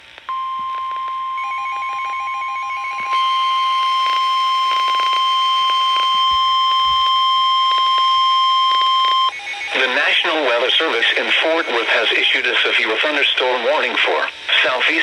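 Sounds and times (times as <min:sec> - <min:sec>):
higher steady tone: 0:00.3 - 0:12.5
high-pitched alarm tone: 0:01.4 - 0:12.4.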